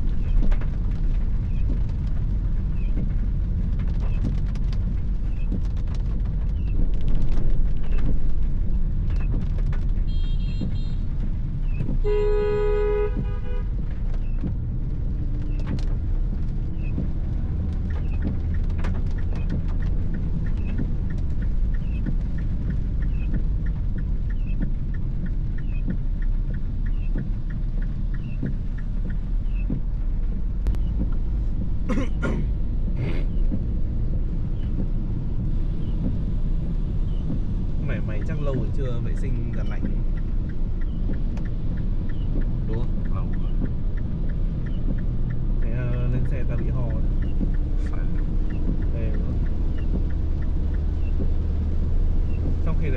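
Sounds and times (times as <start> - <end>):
car engine and road rumble: 0.0 - 52.9
car horn tooting: 10.1 - 11.1, 12.0 - 13.8.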